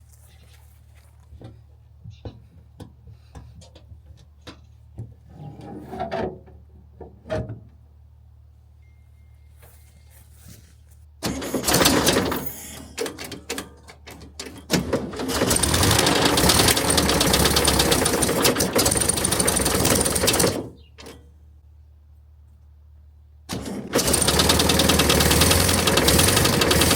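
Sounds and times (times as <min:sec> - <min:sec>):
engine starting and running roughly: 0:11.2 - 0:21.2, 0:23.5 - 0:26.9.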